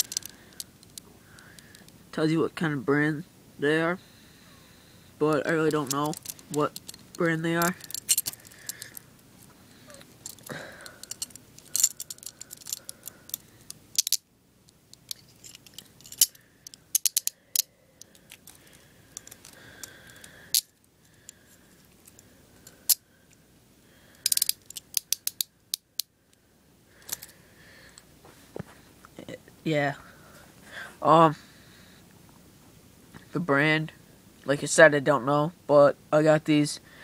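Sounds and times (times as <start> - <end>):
handcuff ratchet clicks: 0.0 - 2.0, 5.3 - 9.1, 9.9 - 20.7, 22.0 - 23.0, 24.1 - 26.1, 27.0 - 27.3.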